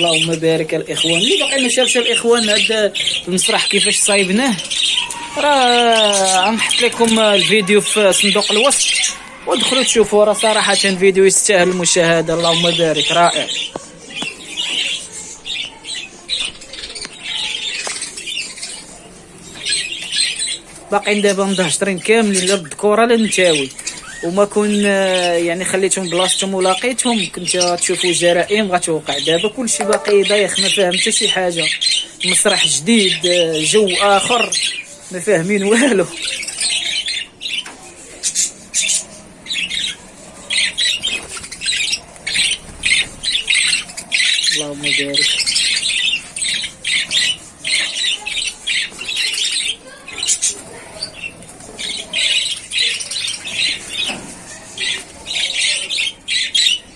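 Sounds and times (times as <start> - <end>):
budgerigars chirping and squawking: 0.0 - 56.9.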